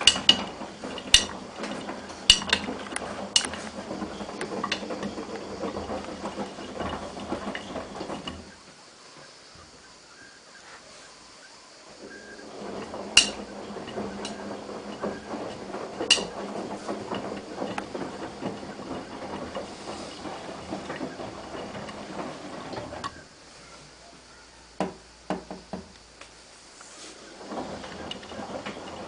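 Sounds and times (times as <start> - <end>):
washing machine drum turning: 0.0 - 8.8, 11.9 - 23.5, 27.0 - 29.0
laundry tumbling with a rattle: 0.0 - 10.4, 11.2 - 29.0
knocks: 12.0 - 23.2, 24.8 - 26.0.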